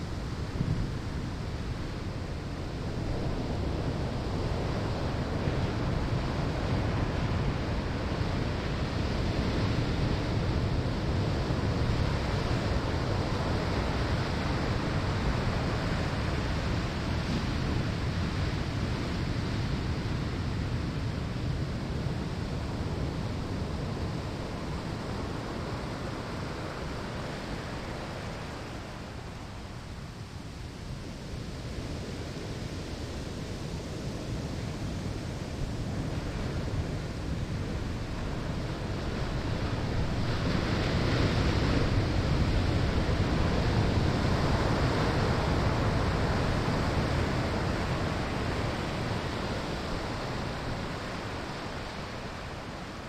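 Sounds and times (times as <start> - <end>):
surf breaking on shore: 32.0 - 53.0.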